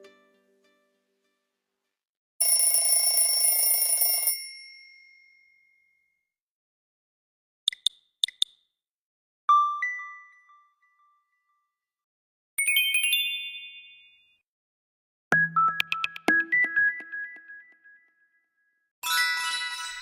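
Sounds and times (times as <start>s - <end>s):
short clicks: 7.7s - 8.6s
shimmering phone chime: 19.0s - 20.0s.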